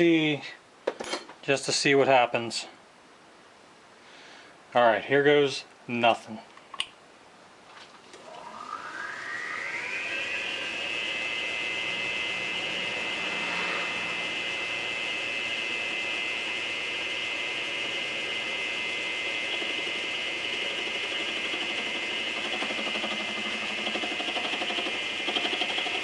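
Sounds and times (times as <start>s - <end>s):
lathe motor high whine: 8.2s - 26.0s.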